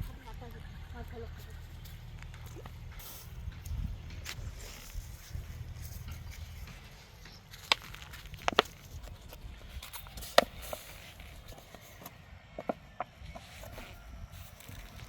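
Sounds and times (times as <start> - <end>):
low rumble: 0.0 - 10.1.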